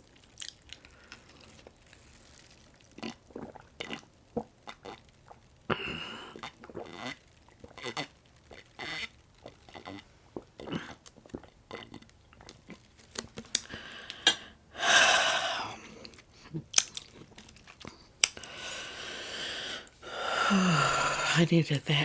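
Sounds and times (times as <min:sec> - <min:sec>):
close chewing and crunching: 0:00.0 - 0:14.2, 0:15.8 - 0:18.6
wet mouth clicks: 0:10.6 - 0:18.7
breathy hissing: 0:13.6 - 0:16.5, 0:17.9 - 0:21.5.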